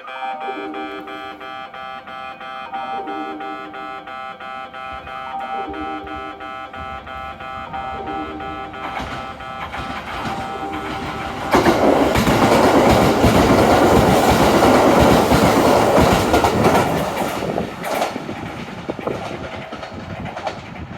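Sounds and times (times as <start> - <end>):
level crossing warning bell: 0.0 - 20.9
train wheels rushing on rails: 4.8 - 20.9.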